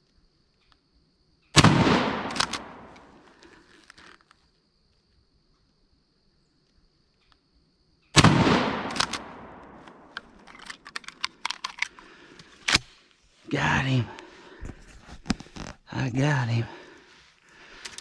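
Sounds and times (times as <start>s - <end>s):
shotgun blast: 1.6s - 3.2s, 8.2s - 10.1s
clicks and rustling: 8.9s - 12.9s, 14.5s - 15.8s, 17.7s - 18.0s.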